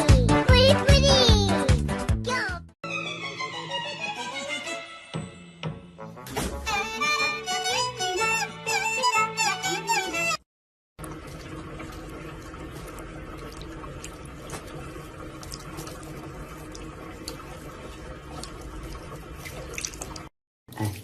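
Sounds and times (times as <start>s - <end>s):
running water: 11.0s - 21.0s.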